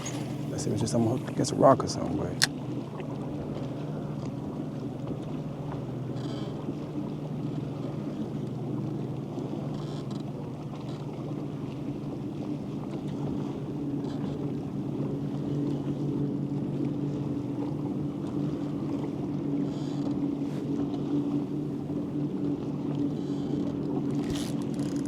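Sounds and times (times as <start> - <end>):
faint short rattles: 0.0 - 1.4, 24.2 - 25.0
boat motor humming: 0.0 - 25.0.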